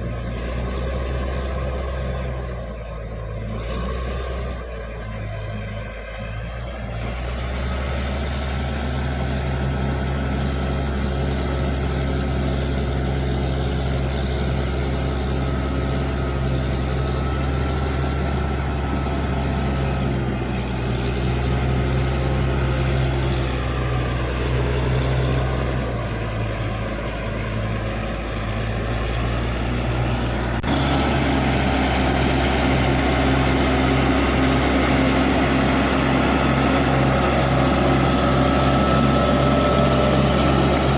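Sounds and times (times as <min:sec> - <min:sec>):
bulldozer diesel engine running: 0:00.0 - 0:40.9.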